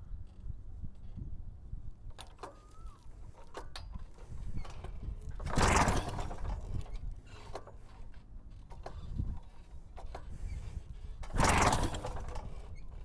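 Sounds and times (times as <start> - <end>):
recoil starter whirring pull: 2.0 - 13.0
starter clicks and rattles: 2.0 - 13.0.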